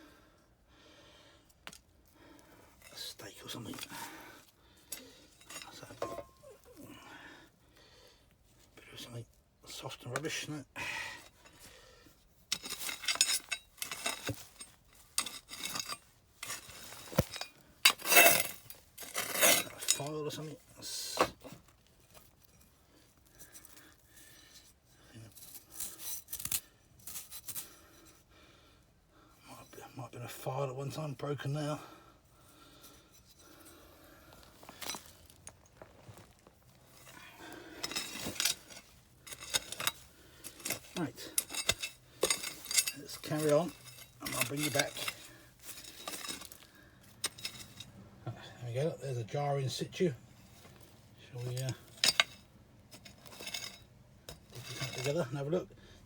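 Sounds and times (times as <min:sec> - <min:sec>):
clinks against debris: 0:04.8 - 0:07.0, 0:12.4 - 0:28.2, 0:32.8 - 0:48.7, 0:50.2 - 0:55.6
crockery and glass clinking: 0:05.4 - 0:06.6
hand tool scraping through soil: 0:12.4 - 0:28.2, 0:32.7 - 0:47.9, 0:48.6 - 0:55.7.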